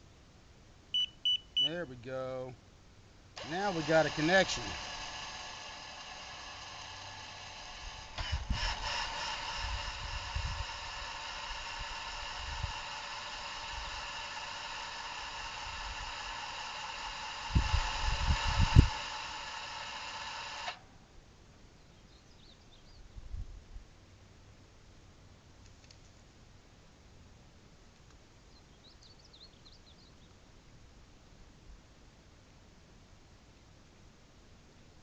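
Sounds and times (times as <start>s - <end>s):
gate actuator motor whining: 3.4s - 20.8s.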